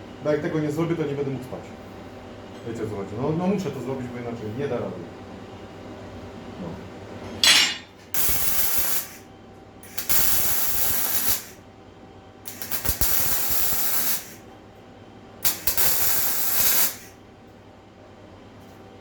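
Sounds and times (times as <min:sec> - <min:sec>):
arc welding crackle: 0:08.1 - 0:09.2, 0:09.8 - 0:11.6, 0:12.4 - 0:14.4, 0:15.4 - 0:17.2.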